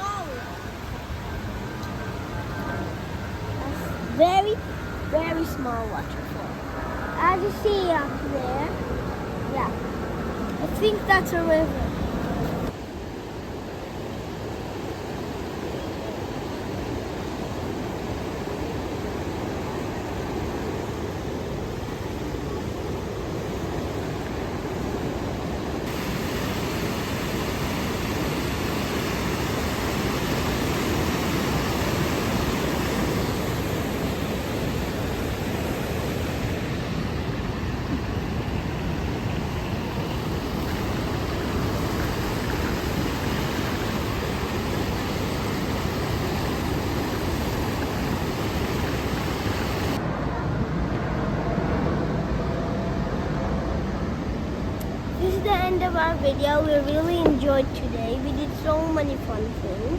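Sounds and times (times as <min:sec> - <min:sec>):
river water rushing over rapids: 0:07.2 - 0:50.6.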